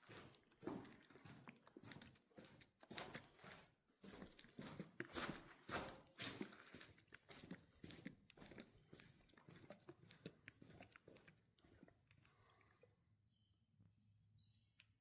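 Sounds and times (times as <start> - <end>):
faint crunching and clicking: 6.5 - 13.0.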